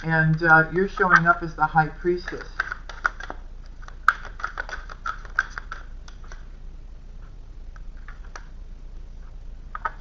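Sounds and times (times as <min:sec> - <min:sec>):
cards clicking and tapping: 0:00.0 - 0:06.5, 0:09.7 - 0:10.0
steady low hum: 0:00.0 - 0:10.0.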